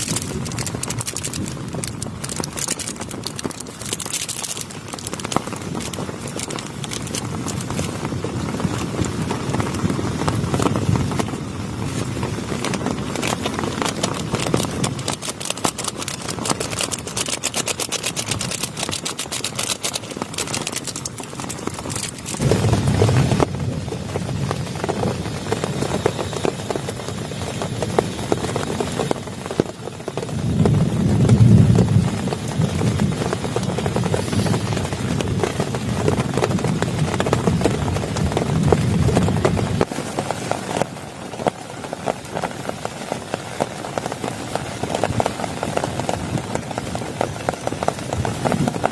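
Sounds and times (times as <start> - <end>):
heavy rain on plastic tarp: 0.0 - 48.9
low rumbling: 20.1 - 28.0.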